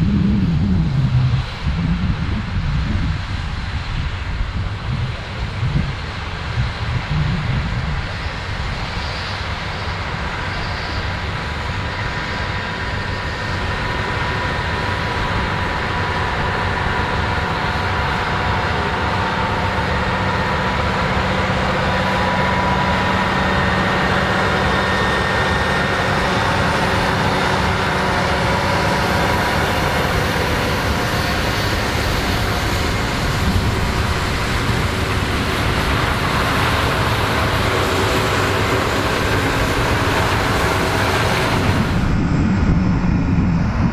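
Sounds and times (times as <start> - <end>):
diesel tractor running under load: 9.4 - 43.6.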